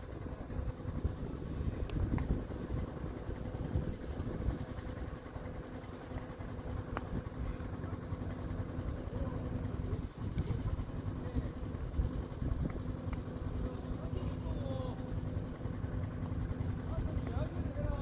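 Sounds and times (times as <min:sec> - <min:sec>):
wind buffeting microphone: 0:00.0 - 0:05.7.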